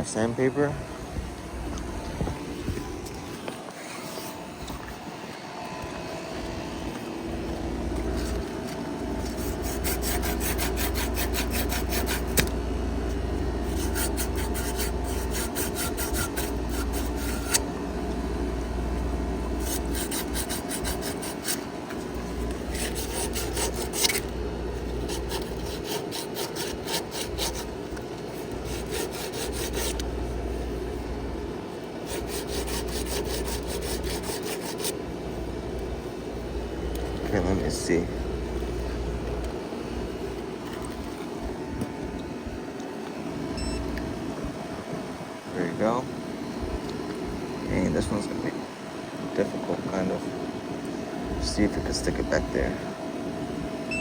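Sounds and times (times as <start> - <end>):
steady low rumble: 0.0 - 3.4, 6.1 - 21.0
sandpaper rubbing: 8.0 - 12.5, 13.6 - 17.6, 19.6 - 31.0, 32.0 - 35.0.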